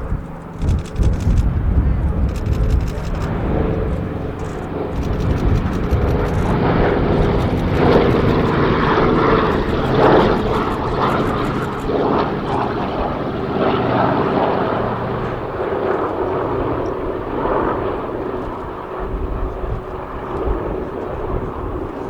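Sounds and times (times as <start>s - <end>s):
propeller plane engines droning: 0.0s - 22.0s.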